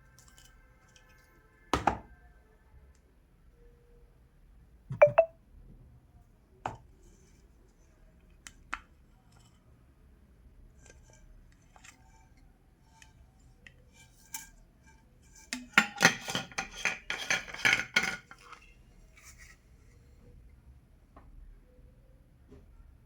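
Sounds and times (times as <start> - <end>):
glass bottles clinking: 4.9 - 5.3.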